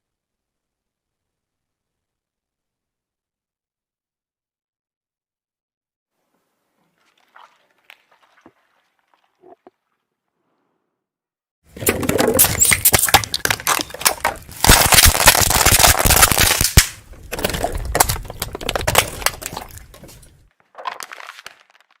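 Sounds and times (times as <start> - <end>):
objects crushed under car tyre: 11.7 - 22.0.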